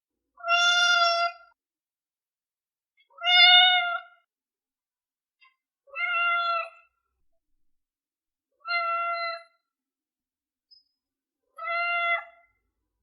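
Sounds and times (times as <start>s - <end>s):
newborn kitten meowing: 0.4s - 1.4s, 3.1s - 4.2s, 8.6s - 9.5s, 11.6s - 12.5s.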